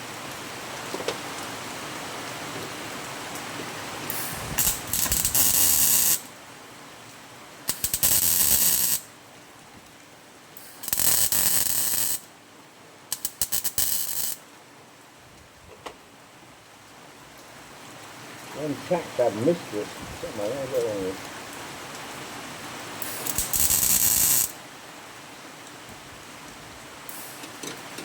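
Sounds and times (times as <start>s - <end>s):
rain on roof: 0.0s - 28.0s
electric welder buzzing: 4.1s - 6.3s, 7.7s - 9.0s, 10.6s - 12.2s, 13.2s - 14.4s, 23.0s - 24.6s, 27.1s - 27.5s.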